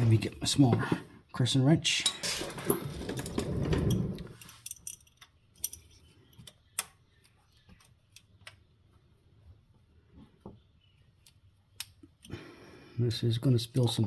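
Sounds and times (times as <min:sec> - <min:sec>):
metal hand tools clattering: 0:02.0 - 0:03.5.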